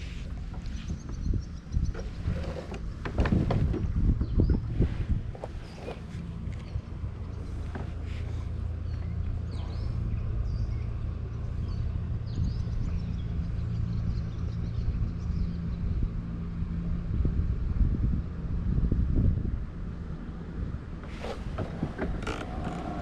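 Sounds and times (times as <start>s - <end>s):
boat motor humming: 0.0s - 4.5s, 21.0s - 23.0s
wind buffeting microphone: 0.0s - 23.0s.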